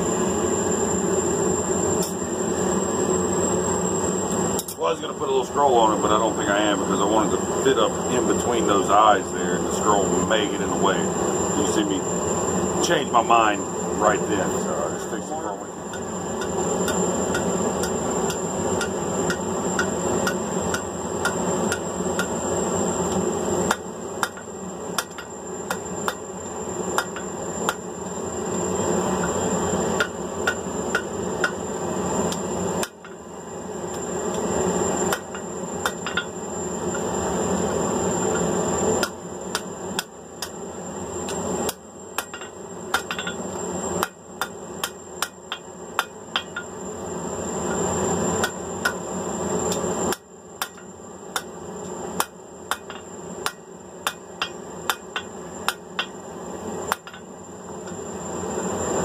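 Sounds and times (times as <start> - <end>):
background hum: 0.0 - 59.0
thin high whine: 0.0 - 59.0
hammer striking steel on anvil: 15.9 - 22.4, 23.7 - 24.4, 25.0 - 26.2, 27.0 - 27.8, 30.0 - 31.6, 35.1 - 36.3, 41.7 - 43.4, 44.0 - 46.7, 48.4 - 49.0, 50.1 - 51.5, 52.2 - 56.2, 56.9 - 57.3.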